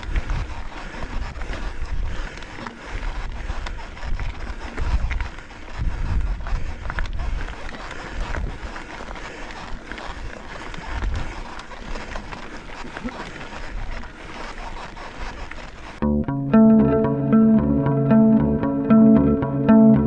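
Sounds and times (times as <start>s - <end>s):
bike clicks and rattles: 0.0s - 16.0s
tyre and trail noise: 0.0s - 16.0s
wind buffeting microphone: 3.0s - 8.8s.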